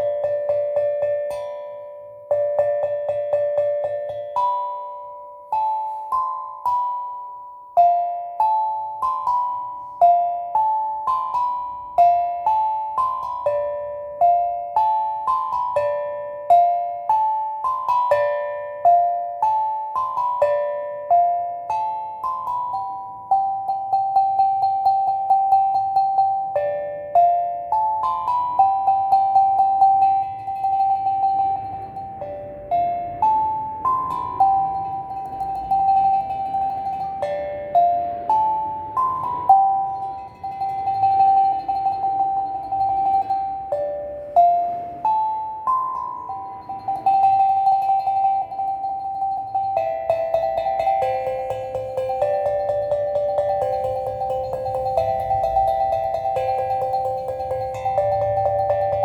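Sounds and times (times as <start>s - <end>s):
steel tongue drum melody: 0.0s - 59.0s.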